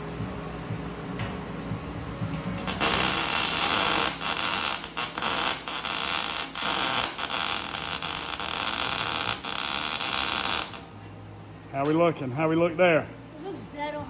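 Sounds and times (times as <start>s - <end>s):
welding arc crackling hiss: 2.3s - 10.9s.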